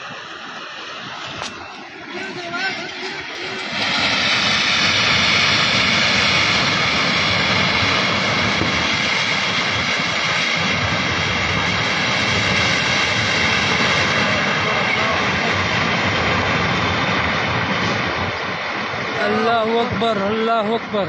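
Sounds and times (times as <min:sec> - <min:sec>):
river water roaring: 0:00.0 - 0:21.0.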